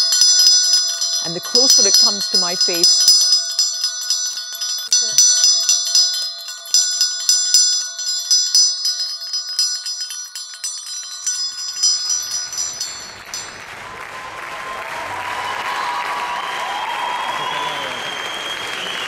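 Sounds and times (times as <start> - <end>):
hand bell ringing: 0.0 - 14.7
applause: 13.2 - 19.0.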